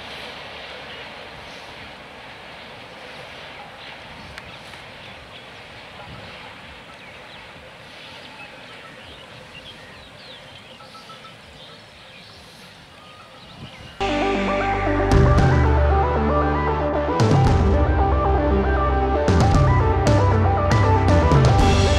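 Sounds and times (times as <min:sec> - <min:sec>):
outdoor background noise: 0:00.0 - 0:21.9
faint bird chirps: 0:03.5 - 0:14.0.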